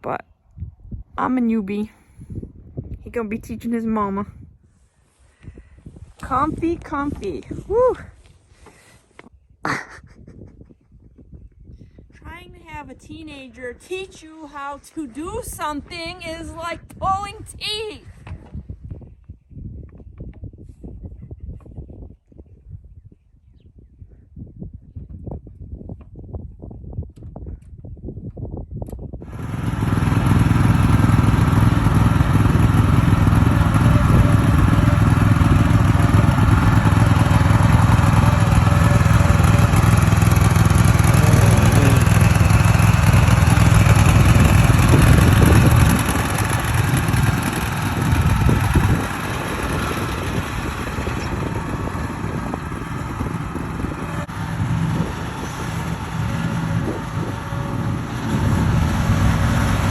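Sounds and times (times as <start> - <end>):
mower engine running: 29.2 - 59.9.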